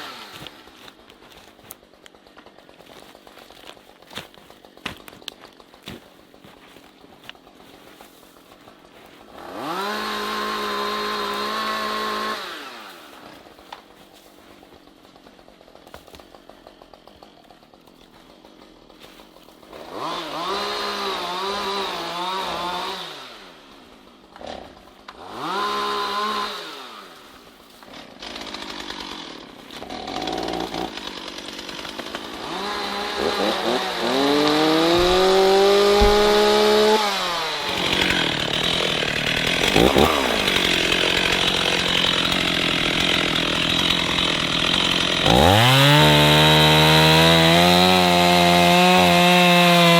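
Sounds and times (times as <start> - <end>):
chainsaw revving: 0.0 - 7.8, 8.5 - 13.6, 15.4 - 49.9
chainsaw cutting wood: 0.0 - 49.9.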